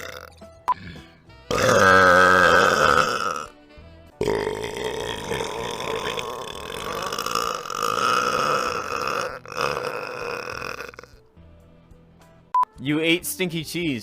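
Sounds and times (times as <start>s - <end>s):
man burping: 0.0s - 3.6s, 4.2s - 11.3s.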